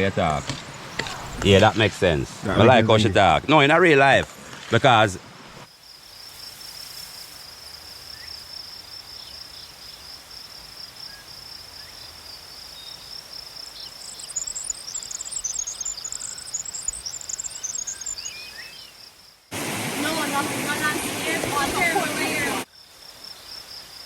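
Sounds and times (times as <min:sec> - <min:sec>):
insect trill: 0:05.6 - 0:19.5, 0:22.6 - 0:24.0
bird chirping: 0:13.7 - 0:19.0.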